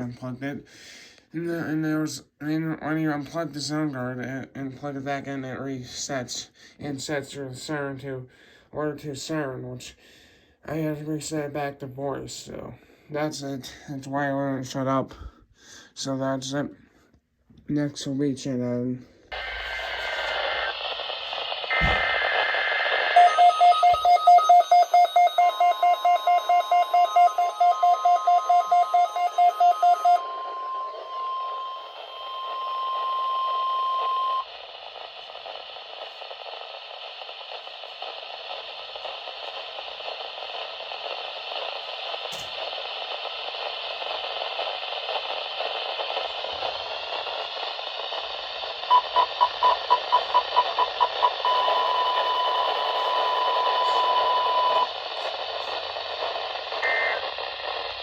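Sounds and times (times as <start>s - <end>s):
radio static hiss: 18.4s - 23.4s, 26.8s - 58.0s
steady warning tone: 19.3s - 39.2s, 45.7s - 58.0s
brief tone burst: 19.4s - 35.5s, 48.9s - 54.9s
rapid alarm beeps: 21.7s - 34.7s, 48.9s - 54.9s, 56.8s - 57.3s.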